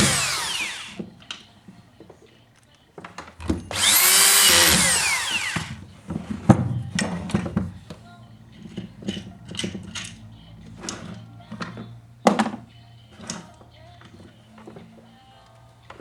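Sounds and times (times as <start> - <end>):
electric power tool whine: 0.0 - 1.2, 3.5 - 5.9
tools clicking and knocking: 2.0 - 8.0, 8.6 - 15.1.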